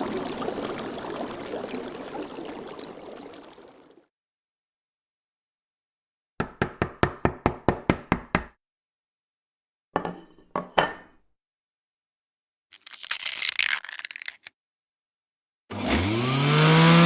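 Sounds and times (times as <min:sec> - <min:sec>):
rough scraping: 0:12.8 - 0:14.5.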